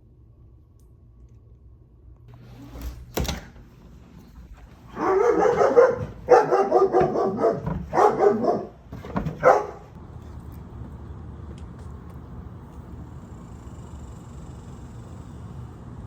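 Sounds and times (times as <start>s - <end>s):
dog barking: 4.9s - 10.0s.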